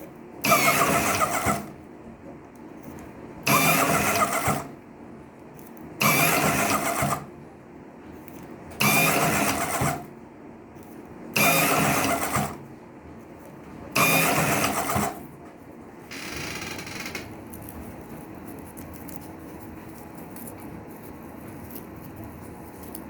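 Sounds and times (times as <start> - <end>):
quiet steady machine sound: 0.0 - 23.0
cigarette rolling machine motor: 0.4 - 1.8, 3.4 - 4.8, 6.0 - 7.3, 8.7 - 10.1, 11.3 - 12.6, 13.9 - 15.3, 16.0 - 23.0.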